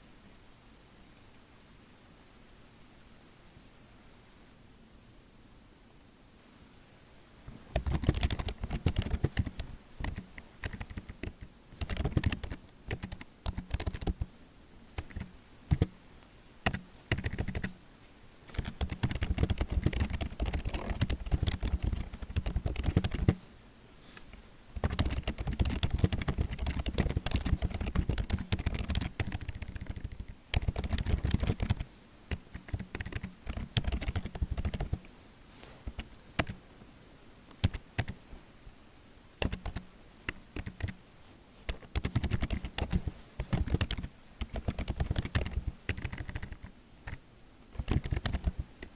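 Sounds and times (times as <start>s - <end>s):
computer keyboard typing: 7.5s - 14.3s, 15.0s - 16.0s, 16.6s - 17.8s, 18.5s - 23.4s, 24.8s - 35.1s, 35.8s - 36.6s, 37.6s - 38.2s, 39.4s - 41.0s, 41.7s - 48.9s.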